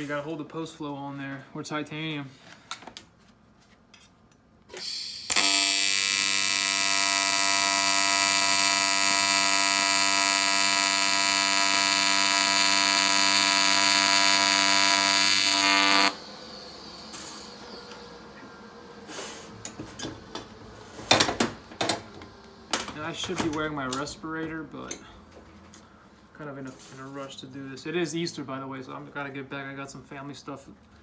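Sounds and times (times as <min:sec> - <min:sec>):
faint steady hum: 0:00.0 - 0:31.0
welding arc buzzing: 0:04.8 - 0:23.2.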